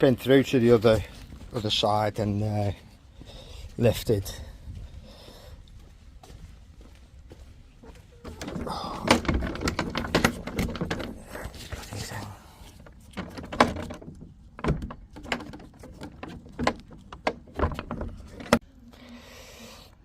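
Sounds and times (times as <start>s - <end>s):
knocks clunks and rattles: 8.2s - 18.6s.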